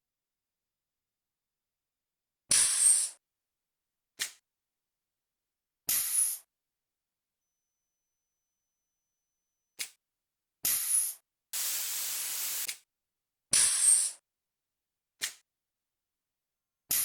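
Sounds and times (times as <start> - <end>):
machine hiss: 11.6 - 12.7.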